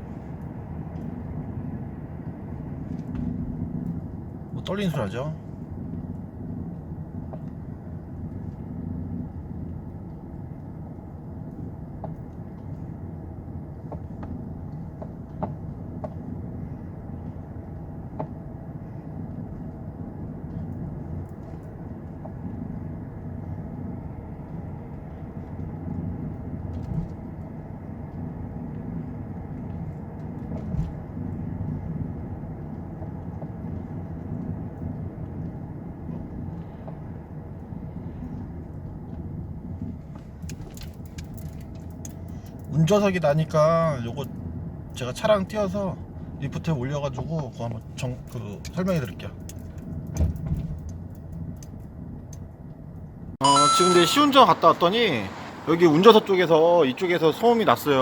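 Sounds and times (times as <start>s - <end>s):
road and tyre rumble: 0.0s - 53.4s, 54.1s - 58.0s
faint suspension clicks and knocks: 5.7s - 8.7s, 11.4s - 13.0s, 13.6s - 42.8s, 47.1s - 53.1s.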